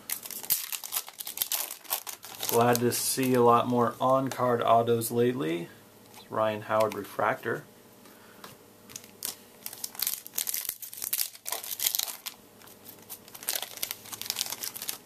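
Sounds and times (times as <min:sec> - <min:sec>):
foil wrapper tearing and crinkling: 0:00.0 - 0:03.5, 0:08.9 - 0:15.0.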